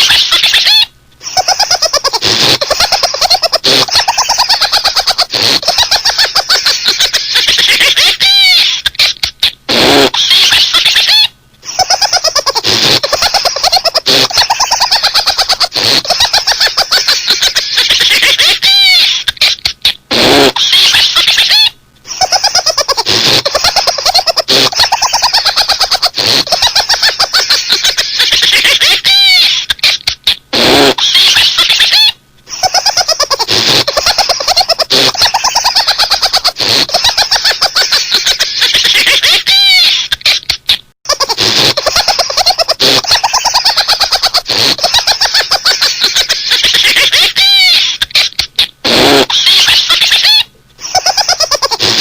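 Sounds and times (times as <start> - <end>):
high-pitched rapid laughter: 0.0 - 52.0.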